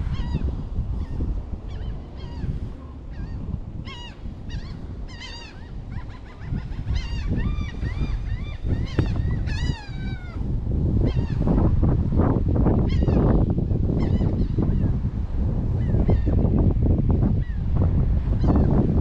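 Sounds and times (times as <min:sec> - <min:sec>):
wind rumble on microphone: 0:00.0 - 0:19.0.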